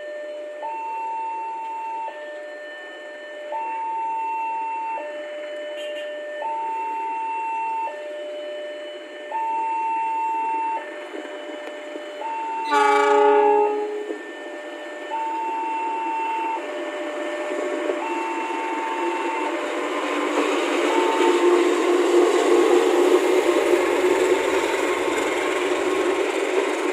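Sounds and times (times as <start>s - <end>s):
level crossing two-tone alarm: 0.0s - 17.4s, 18.0s - 19.6s
train horn blast: 5.7s - 6.2s, 12.6s - 14.4s, 20.9s - 22.1s
train rumble: 8.9s - 26.9s.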